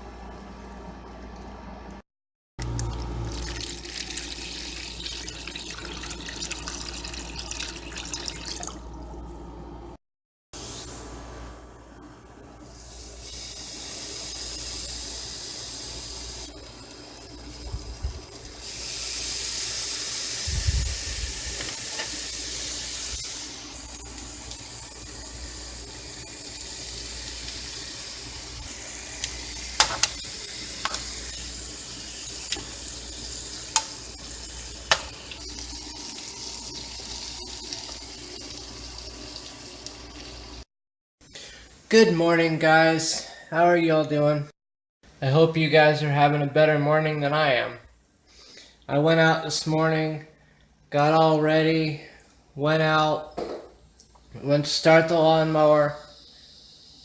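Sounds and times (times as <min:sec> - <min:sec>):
water running from tap: 0:02.6 - 0:08.8, 0:13.0 - 0:40.6.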